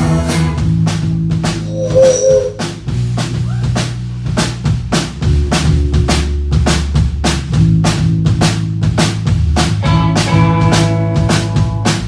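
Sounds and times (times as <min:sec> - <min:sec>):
drum kit beat: 0:00.1 - 0:12.0
sustained bass notes: 0:01.6 - 0:03.2
bending guitar note: 0:01.7 - 0:02.7.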